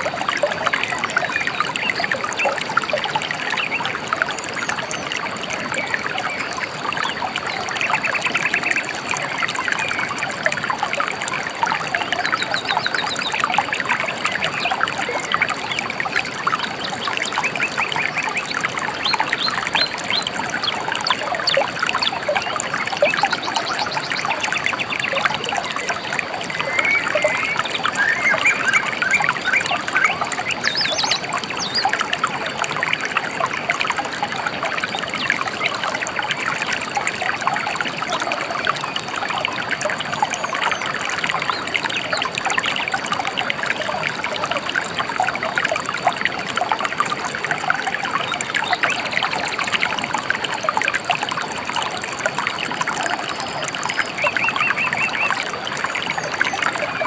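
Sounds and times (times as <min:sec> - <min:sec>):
river water babbling: 0:00.0 - 0:57.0
bird chirps: 0:25.1 - 0:31.9, 0:54.0 - 0:55.4.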